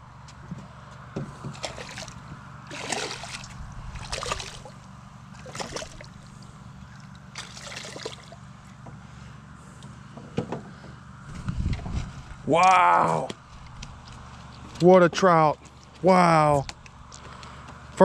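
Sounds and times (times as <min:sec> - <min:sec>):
fish splashing at water surface: 0:01.5 - 0:08.4.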